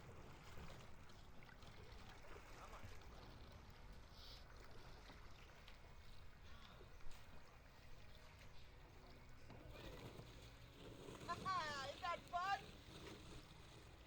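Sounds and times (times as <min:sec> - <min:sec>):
faint water ambience: 0:00.0 - 0:14.0.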